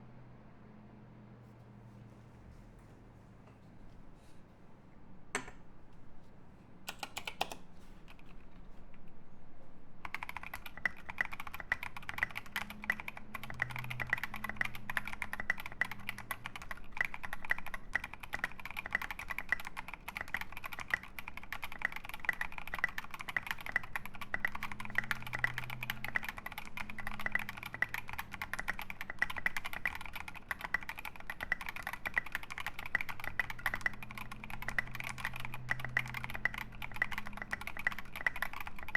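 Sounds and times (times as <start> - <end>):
mechanical keyboard typing: 6.9 - 8.5, 10.0 - 38.9.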